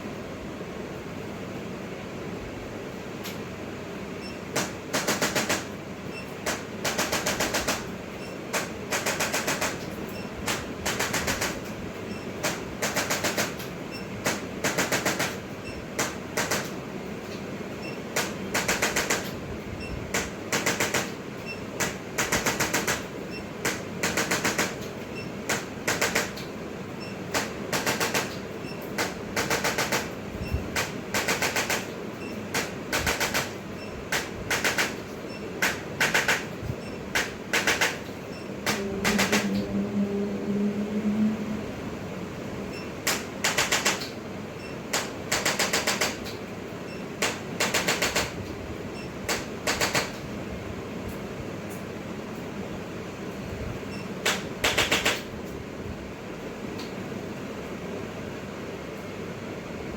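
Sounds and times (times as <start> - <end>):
steady hum: 0.0 - 59.9
rapid mechanical rattling bursts: 4.2 - 39.6, 42.7 - 50.3, 54.1 - 55.4.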